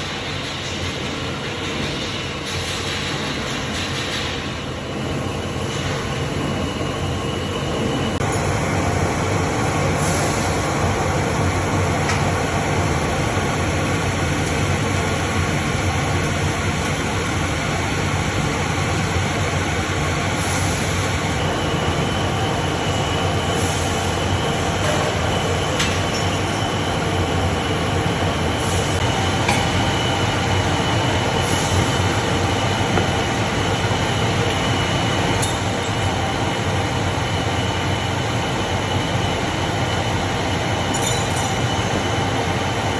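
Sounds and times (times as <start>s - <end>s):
factory machinery running: 0.0s - 42.9s
thin high whine: 9.6s - 21.4s.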